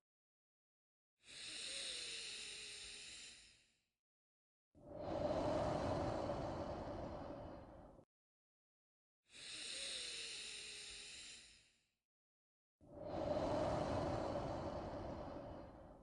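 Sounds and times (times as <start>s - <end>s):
slow human breathing: 1.2s - 3.4s, 4.8s - 8.1s, 9.3s - 11.7s, 12.9s - 16.0s.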